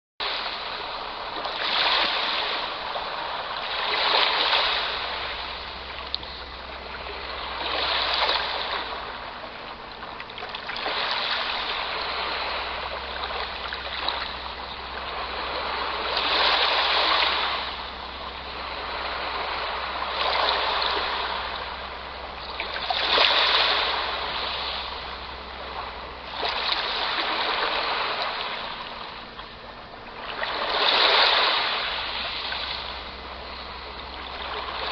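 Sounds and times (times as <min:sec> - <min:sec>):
faint low rumble: 0:00.2 - 0:34.9
sea waves washing onto shore: 0:00.2 - 0:34.9.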